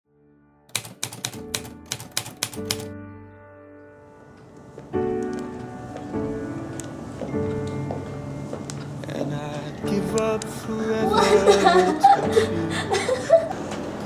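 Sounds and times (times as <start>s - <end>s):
soft music: 0.1s - 14.0s
sharp typewriter-like clicks: 0.7s - 2.9s.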